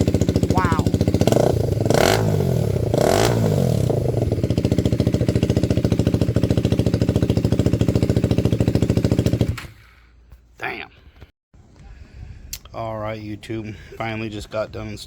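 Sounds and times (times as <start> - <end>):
motorcycle engine revving and idling: 0.0 - 9.9.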